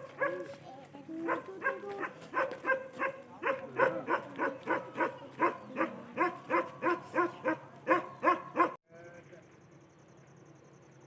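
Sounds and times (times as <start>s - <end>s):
dog barking: 0.0s - 0.6s, 1.2s - 8.8s.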